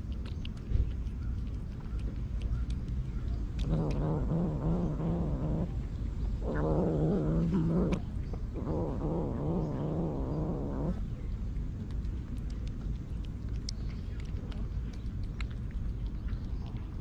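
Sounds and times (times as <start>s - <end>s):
cat grumbling while eating: 3.5s - 11.1s.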